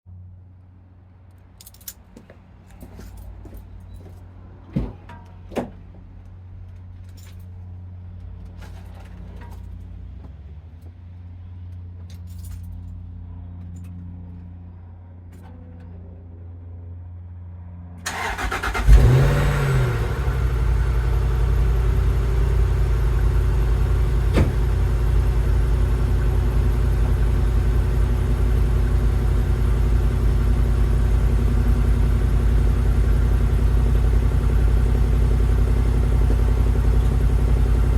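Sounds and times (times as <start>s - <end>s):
car engine idling: 18.1s - 37.9s.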